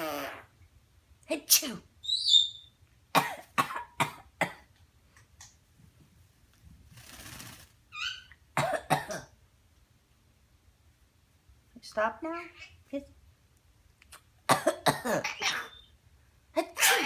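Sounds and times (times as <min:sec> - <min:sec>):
pet coughing: 0:03.2 - 0:04.7, 0:08.6 - 0:09.3, 0:14.5 - 0:15.8, 0:16.6 - 0:17.0.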